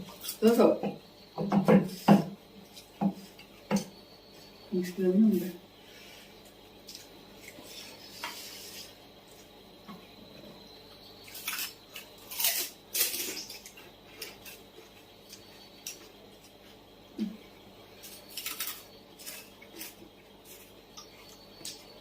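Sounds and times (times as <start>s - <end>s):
crisp crunches of chewing: 11.2s - 14.7s, 18.0s - 21.9s.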